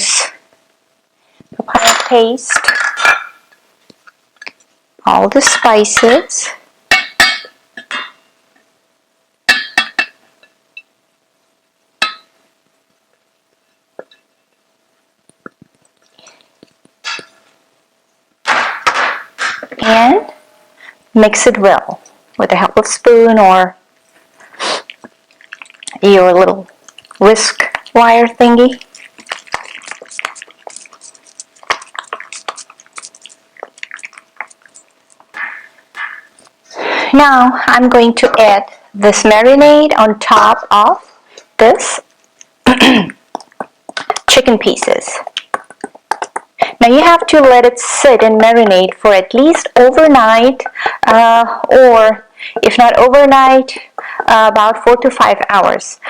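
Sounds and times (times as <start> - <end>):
wet paste stirred in a bowl: 24.8 - 36.6, 43.3 - 46.7.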